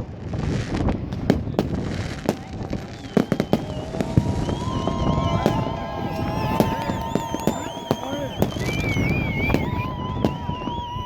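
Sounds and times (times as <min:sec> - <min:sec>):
fireworks and firecrackers banging: 0:00.0 - 0:11.0
warbling whistles: 0:01.4 - 0:11.0.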